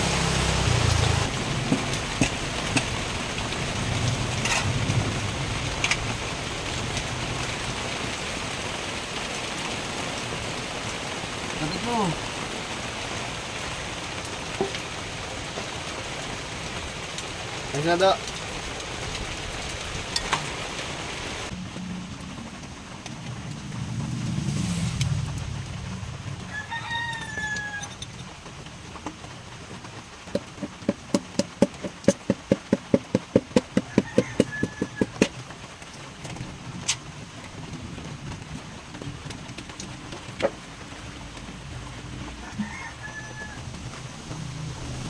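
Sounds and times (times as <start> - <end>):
rapid sharp taps: 30.3 - 35.4
chickens calling: 33.6 - 35.4.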